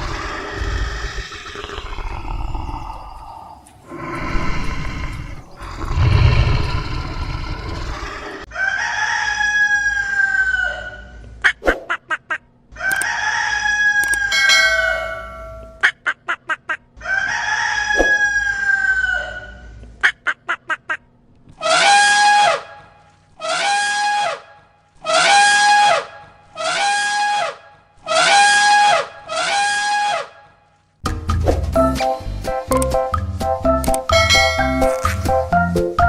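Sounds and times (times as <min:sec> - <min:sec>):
rooster crowing: 0:08.4 - 0:11.0, 0:12.8 - 0:15.5, 0:17.0 - 0:19.6.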